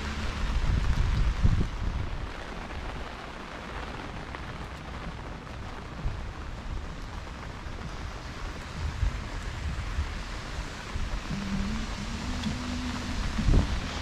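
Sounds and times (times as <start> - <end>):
rain falling: 0.0 - 14.0
low rumble: 5.1 - 14.0
low thumps: 11.2 - 14.0.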